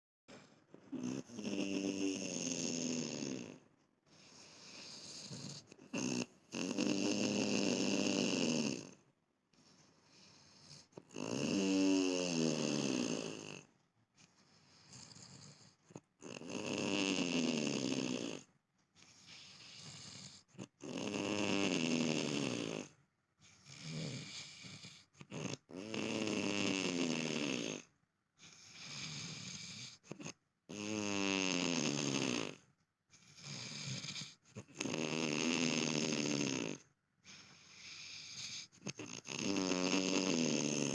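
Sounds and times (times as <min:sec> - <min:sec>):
quiet breath: 0:00.3 - 0:01.3, 0:03.5 - 0:06.3, 0:08.6 - 0:11.1, 0:12.9 - 0:16.1, 0:18.4 - 0:20.8, 0:27.7 - 0:30.2, 0:36.8 - 0:39.0
loud rattling snores: 0:00.9 - 0:09.0, 0:10.1 - 0:13.7, 0:14.6 - 0:32.6, 0:33.2 - 0:40.9.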